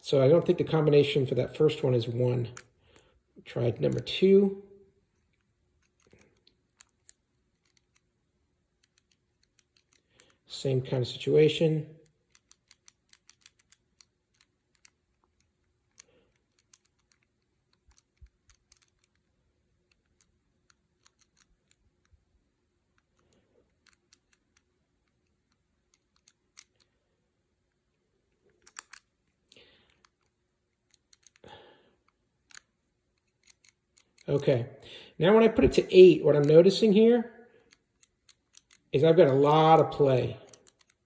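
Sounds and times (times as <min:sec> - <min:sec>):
padlock dial clicks: 0:03.8 - 0:04.2, 0:05.1 - 0:08.1, 0:08.7 - 0:10.4, 0:12.0 - 0:22.2, 0:22.9 - 0:27.0, 0:28.4 - 0:31.4, 0:32.0 - 0:34.2, 0:37.6 - 0:41.0.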